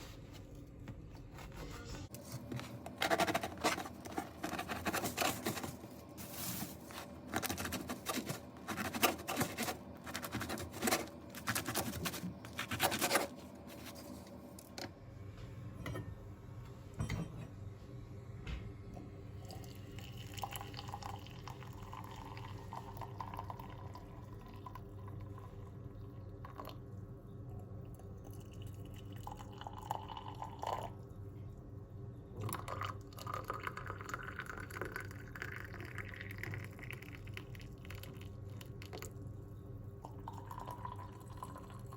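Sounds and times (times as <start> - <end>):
brisk scrubbing and scraping: 1.4 - 14.3.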